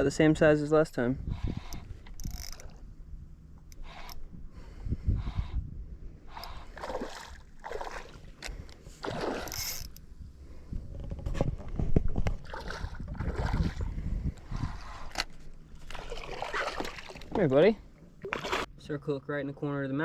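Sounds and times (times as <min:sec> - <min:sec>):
water splashing and sloshing: 0:06.3 - 0:10.0, 0:11.3 - 0:18.7.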